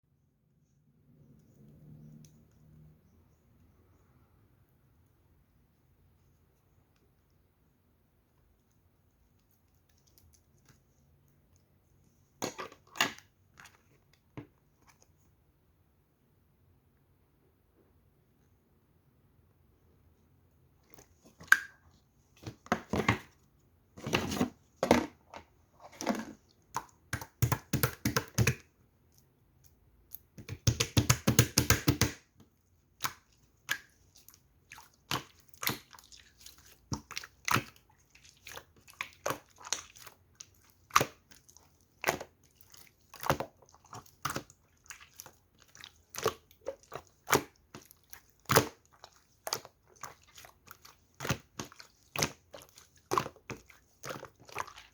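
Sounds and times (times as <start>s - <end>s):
slime squishing with sticky pops: 26.5s - 54.9s.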